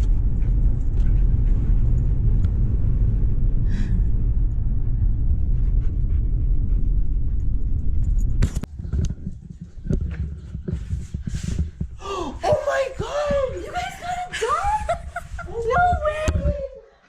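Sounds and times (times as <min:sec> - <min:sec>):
car road rumble: 0:00.0 - 0:16.5.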